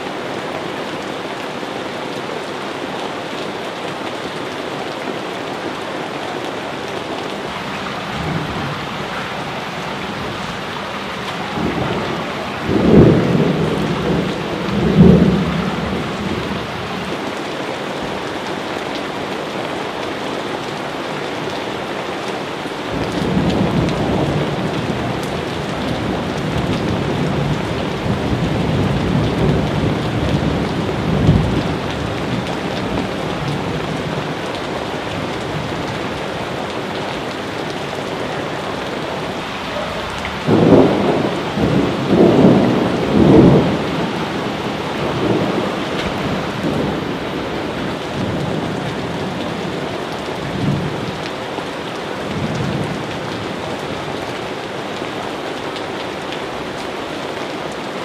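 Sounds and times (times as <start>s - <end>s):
steady rain falling: 0.0s - 58.0s
thunder rumbling: 7.4s - 17.2s, 22.9s - 49.8s.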